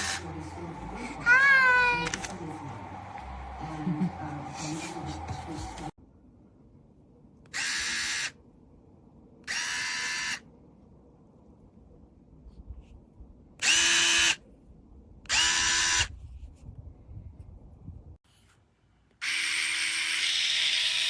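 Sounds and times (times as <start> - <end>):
electric screwdriver motor whining: 7.6 - 8.3, 9.5 - 10.4, 13.6 - 14.4, 15.3 - 16.1, 19.2 - 21.0.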